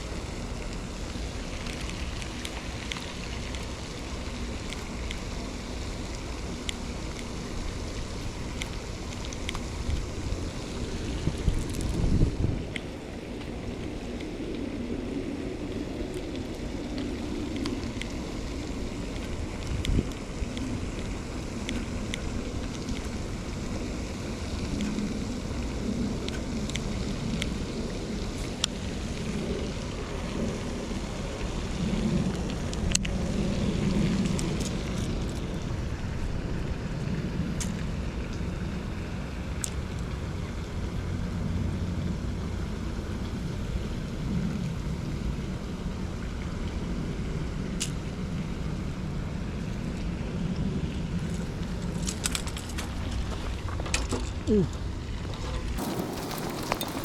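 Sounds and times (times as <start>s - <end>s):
wind buffeting microphone: 0.0s - 57.0s.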